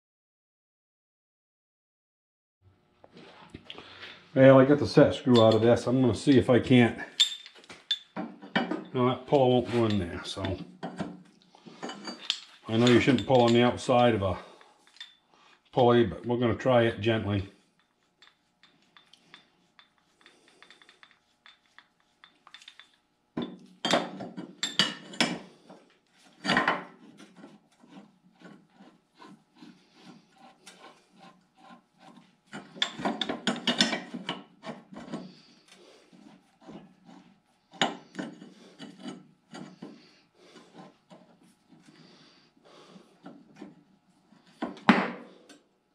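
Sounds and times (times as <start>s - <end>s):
metal scraping and rubbing: 26.2s - 42.1s.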